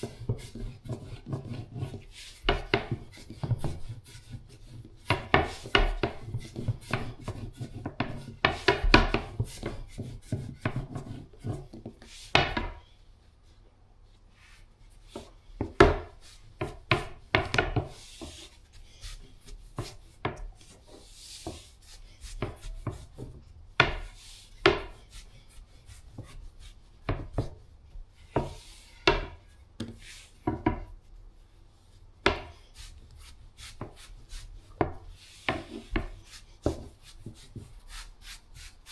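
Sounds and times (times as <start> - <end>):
rolling pin rolling dough: 0.0 - 13.0, 14.8 - 38.9
rolling pin knocking on board: 15.6 - 18.4, 32.2 - 32.6.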